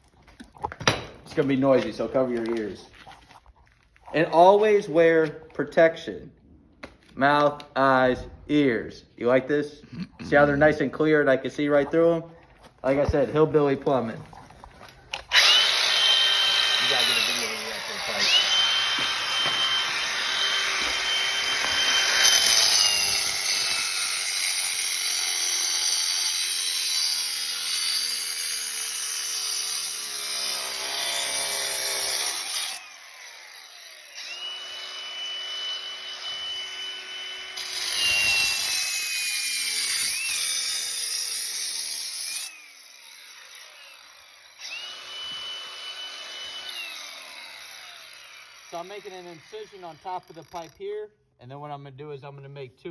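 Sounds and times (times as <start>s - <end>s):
blade grinding through clay pipe: 12.9s - 34.5s, 37.6s - 44.1s, 47.6s - 50.9s
power cutter motor whine: 15.2s - 24.2s, 30.4s - 39.2s, 42.2s - 50.8s.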